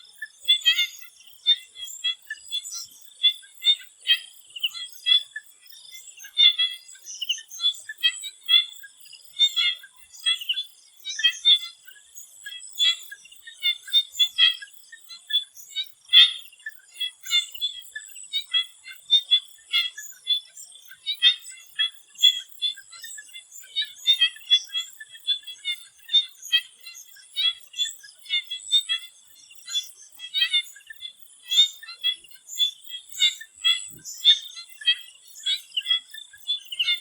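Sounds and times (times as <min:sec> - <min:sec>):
frogs chirping: 0:00.0 - 0:37.0.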